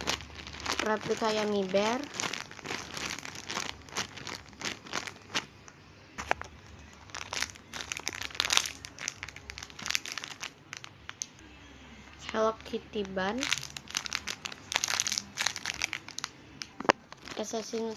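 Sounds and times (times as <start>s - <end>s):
plastic packaging crackling: 0.0s - 11.3s, 12.2s - 17.9s.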